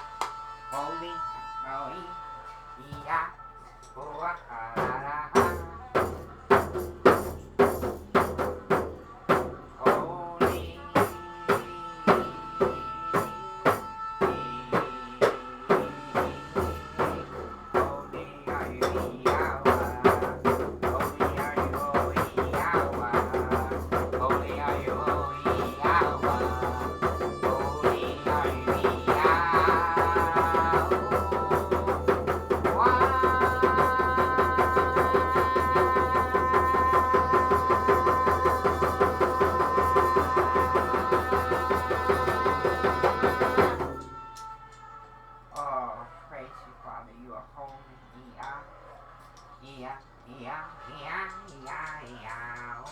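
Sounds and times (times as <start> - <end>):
long held note: 0.0 - 4.0
instrumental music with percussive beat: 4.8 - 44.8.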